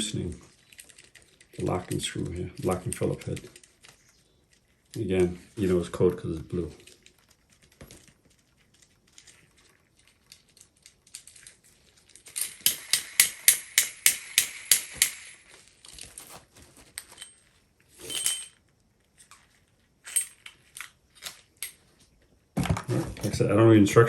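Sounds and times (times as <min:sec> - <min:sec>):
metal parts rattling: 0:00.0 - 0:21.9
hand tool clicking on metal: 0:12.3 - 0:15.4.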